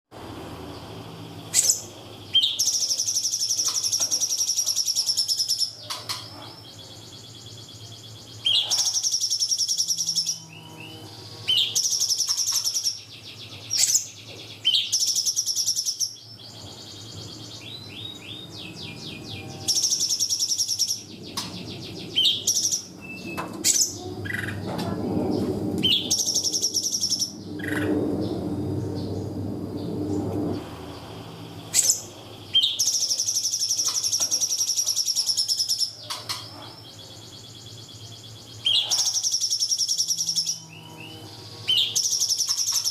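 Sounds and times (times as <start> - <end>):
faint low hum: 0.2 - 42.9
bird trilling: 1.4 - 29.4, 30.6 - 42.9.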